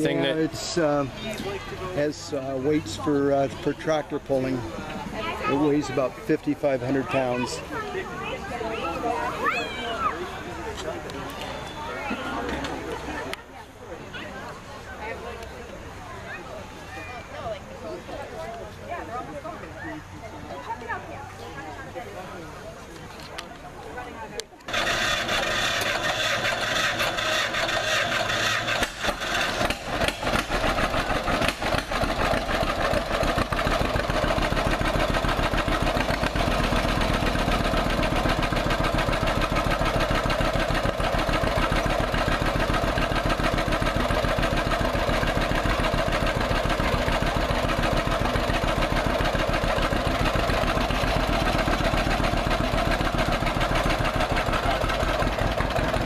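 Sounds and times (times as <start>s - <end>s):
tractor engine idling: 0.0s - 9.3s, 24.6s - 56.0s.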